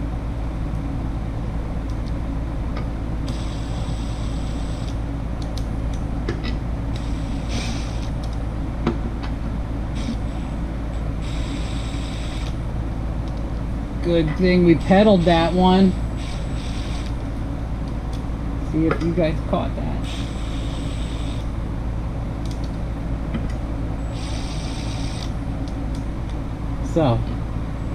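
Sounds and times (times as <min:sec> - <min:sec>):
steady low shop hum: 0:00.0 - 0:27.9
short hiss: 0:07.0 - 0:08.0
power driver whirring: 0:11.2 - 0:12.6, 0:16.2 - 0:17.2, 0:24.2 - 0:25.4.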